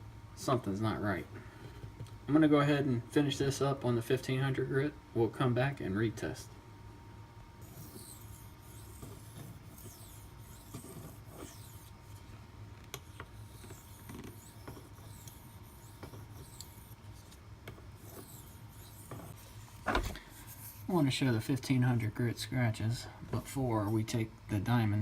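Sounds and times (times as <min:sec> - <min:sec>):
knife scraping on whetstone: 0:07.6 - 0:12.2, 0:13.0 - 0:17.4, 0:18.0 - 0:19.8.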